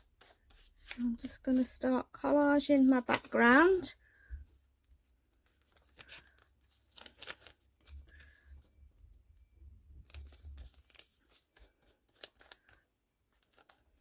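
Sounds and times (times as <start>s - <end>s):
paper scraps rustling: 0.0s - 3.9s, 10.1s - 12.8s.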